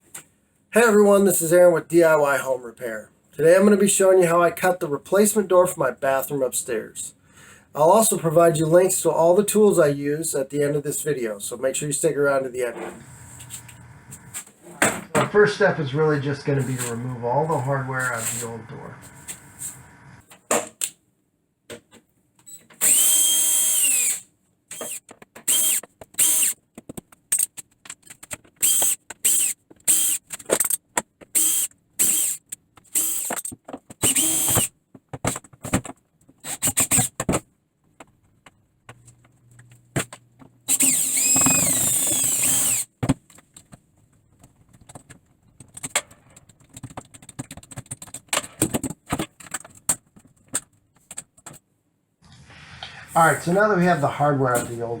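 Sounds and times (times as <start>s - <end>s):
power drill driver whirring: 12.8s - 14.4s, 16.7s - 20.2s, 22.8s - 26.5s, 33.0s - 33.3s, 34.0s - 34.7s, 40.7s - 42.9s.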